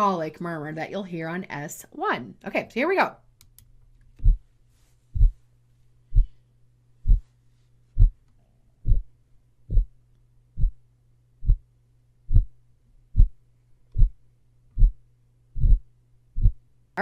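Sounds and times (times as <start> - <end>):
faint low hum: 0.0 - 17.0
heartbeat thumps with murmur: 4.2 - 4.4, 5.1 - 5.4, 6.1 - 6.4, 7.0 - 7.3, 8.0 - 8.2, 8.8 - 9.1, 9.7 - 10.0, 10.6 - 10.8, 11.4 - 11.6, 12.3 - 12.5, 13.2 - 13.4, 14.0 - 14.2, 14.8 - 15.0, 15.6 - 16.6.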